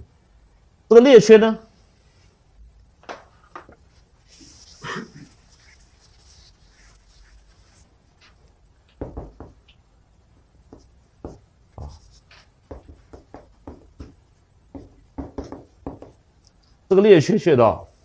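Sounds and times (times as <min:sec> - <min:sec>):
writing strokes on a board: 0:03.6 - 0:09.6, 0:10.4 - 0:16.8
sharp taps of writing: 0:08.2 - 0:09.8, 0:10.6 - 0:16.5.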